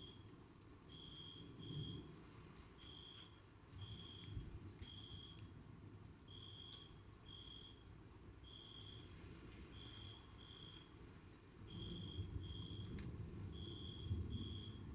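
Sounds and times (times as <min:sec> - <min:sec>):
high insect chirps: 0:02.8 - 0:05.4, 0:06.3 - 0:07.8, 0:08.4 - 0:11.0, 0:11.7 - 0:12.9, 0:13.5 - 0:14.8.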